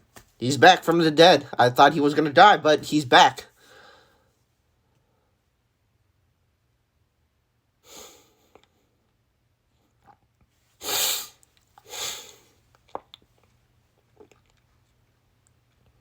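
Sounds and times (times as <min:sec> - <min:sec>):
person's sharp nasal breaths: 0:03.6 - 0:04.3, 0:07.8 - 0:08.8, 0:10.8 - 0:12.6.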